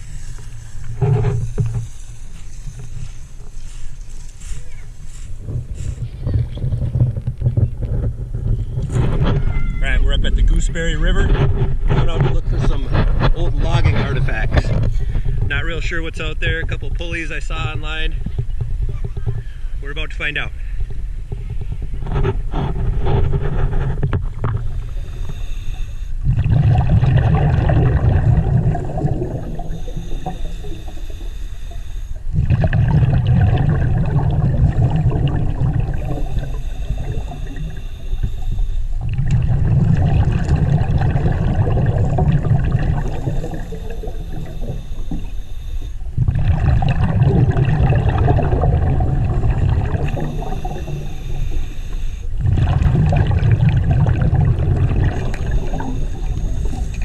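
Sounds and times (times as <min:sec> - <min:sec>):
regulator inhale hiss: 0:00.0 - 0:06.0, 0:24.7 - 0:26.3, 0:29.2 - 0:32.3, 0:35.9 - 0:39.0, 0:42.7 - 0:46.1, 0:49.5 - 0:52.4, 0:55.4 - 0:57.0
bubbly exhale underwater: 0:26.2 - 0:45.3, 0:46.0 - 0:57.0.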